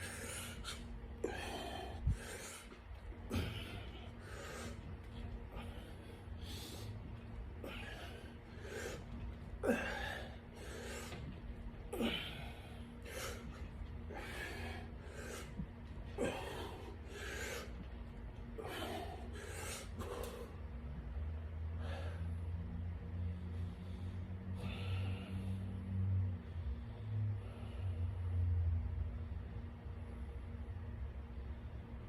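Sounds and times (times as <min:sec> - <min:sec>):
person breathing hard: 0:00.0 - 0:20.8, 0:21.6 - 0:28.6.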